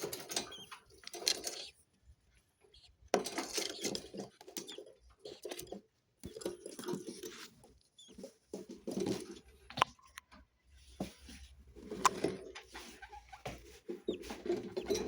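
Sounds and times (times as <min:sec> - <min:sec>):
budgerigars chattering: 0:00.2 - 0:01.8.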